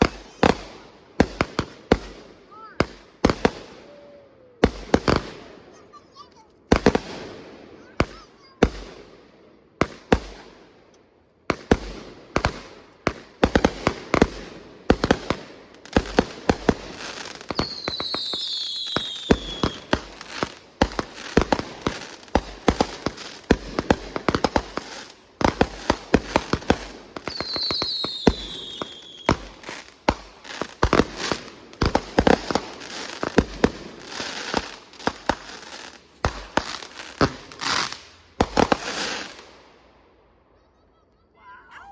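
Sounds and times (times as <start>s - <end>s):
fireworks bangs and crackling: 0.0s - 40.2s
falling firework whistle: 17.6s - 19.9s, 27.3s - 29.4s.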